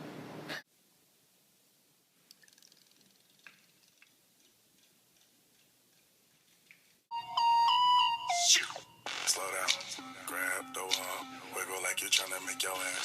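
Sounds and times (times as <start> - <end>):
loud electronic melody: 7.1 - 13.0.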